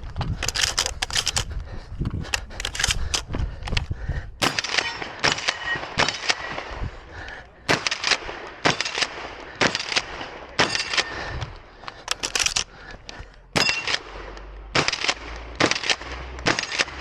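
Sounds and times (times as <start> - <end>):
shotgun shots: 4.4 - 6.8, 7.7 - 11.3, 13.6 - 17.0.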